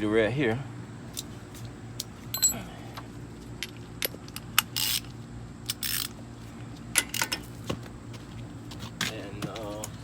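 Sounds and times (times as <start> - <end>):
sharp metal clinks: 2.3 - 2.7
ratchet wrench clicking: 4.3 - 6.2.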